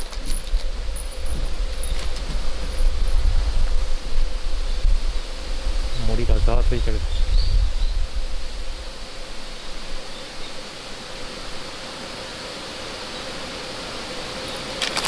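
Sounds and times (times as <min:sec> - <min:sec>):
wind rumble on microphone: 0:00.0 - 0:10.1
wind rustling leaves: 0:00.0 - 0:15.0.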